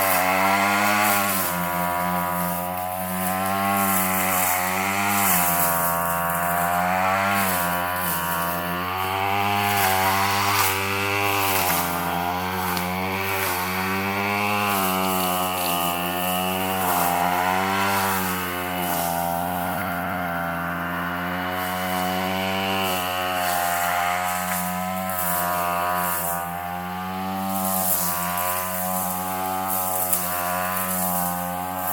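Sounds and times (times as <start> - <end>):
weed eater engine cutting brush: 0.0 - 31.9.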